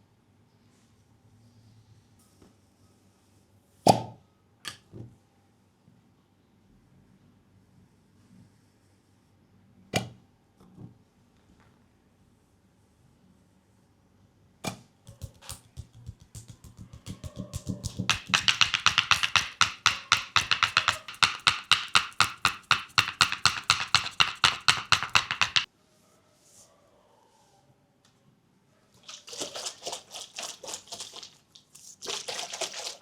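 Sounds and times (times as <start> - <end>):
massage gun tapping on legs: 15.1 - 25.7.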